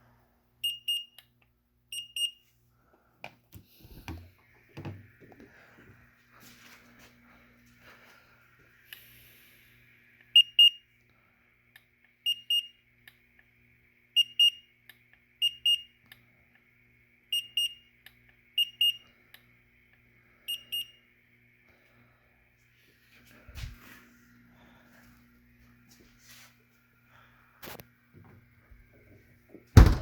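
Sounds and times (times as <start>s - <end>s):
freezer alarm high-pitched beeps: 0.6s - 1.3s, 1.9s - 2.5s, 10.3s - 10.9s, 12.2s - 12.8s, 14.1s - 14.8s, 15.4s - 16.0s, 17.3s - 17.9s, 18.5s - 19.1s, 20.4s - 21.1s.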